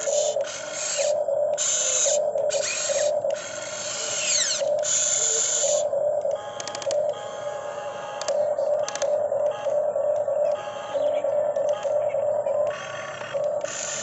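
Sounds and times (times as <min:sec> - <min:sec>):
small electric motors whirring: 0:00.0 - 0:07.2, 0:12.6 - 0:14.0.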